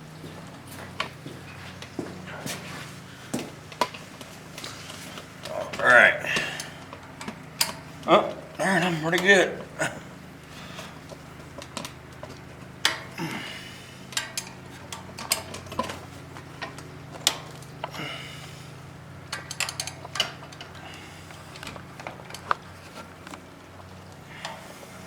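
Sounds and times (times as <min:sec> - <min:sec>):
hand tools clinking on metal: 0:03.5 - 0:24.8.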